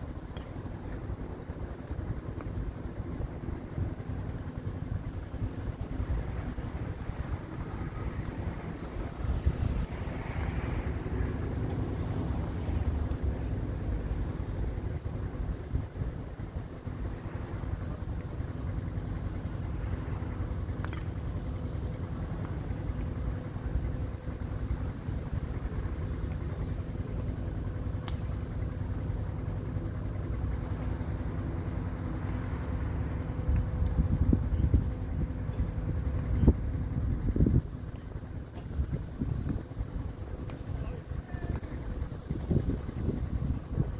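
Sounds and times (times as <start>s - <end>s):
faint hum: 0.0s - 43.9s
wind buffeting microphone: 2.8s - 18.1s, 33.3s - 43.9s.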